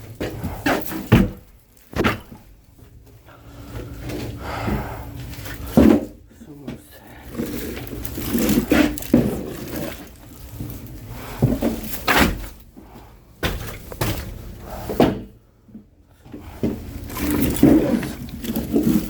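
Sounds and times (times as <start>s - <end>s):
firewood logs thunking down: 0.0s - 2.5s, 5.4s - 12.7s, 13.4s - 15.3s, 16.2s - 19.0s.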